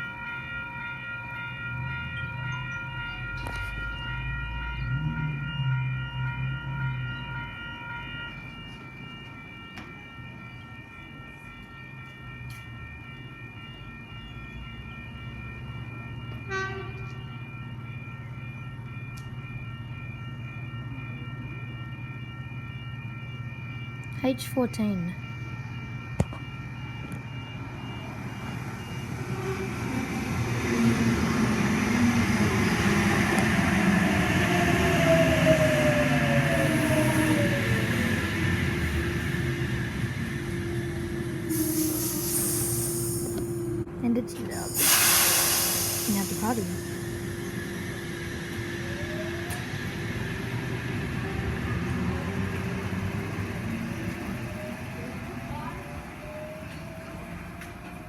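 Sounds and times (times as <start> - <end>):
train whine: 0.0 - 58.0
train wheels rumbling on rails: 27.2 - 58.0.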